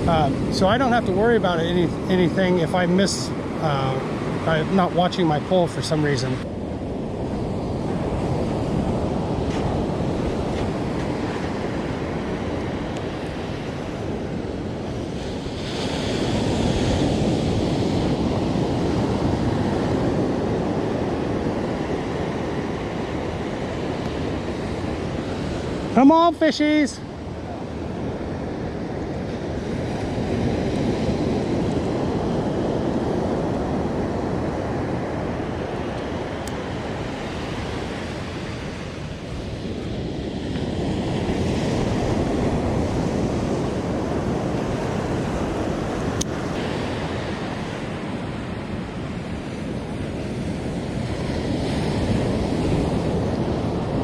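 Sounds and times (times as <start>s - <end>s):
ocean surf breaking: 0.0s - 54.0s
wind buffeting microphone: 0.0s - 54.0s.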